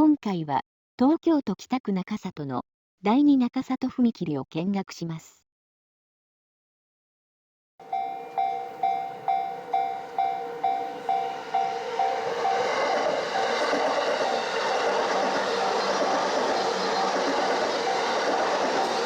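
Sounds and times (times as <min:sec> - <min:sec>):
level-crossing alarm ringing: 0:07.8 - 0:19.0
passing train: 0:07.8 - 0:19.0.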